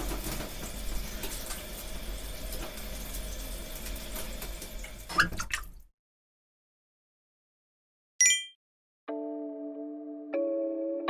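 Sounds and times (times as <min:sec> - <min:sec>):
water running: 0:00.0 - 0:05.9.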